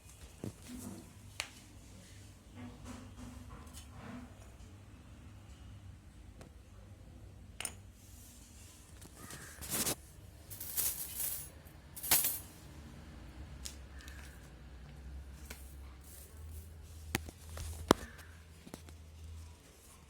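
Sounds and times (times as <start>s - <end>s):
bicycle parts and tools clinking: 9.6s - 12.6s.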